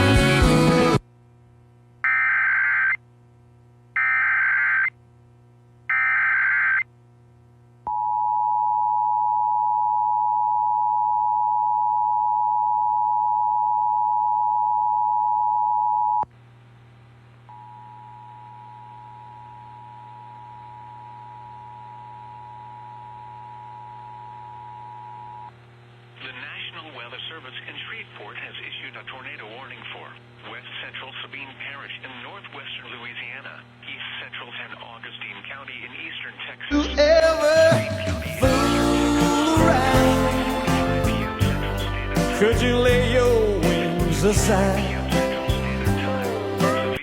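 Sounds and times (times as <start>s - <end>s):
warbling data tone bursts: 4.0s - 4.9s.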